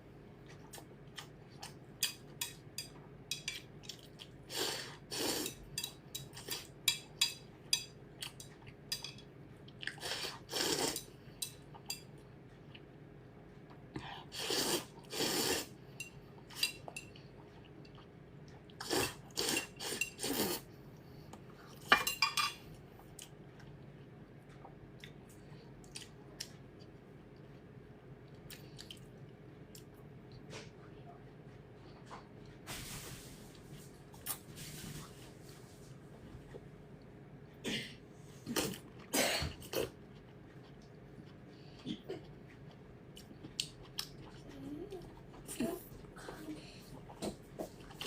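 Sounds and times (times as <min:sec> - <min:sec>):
utensils clinking on a plate: 0:21.9 - 0:22.7.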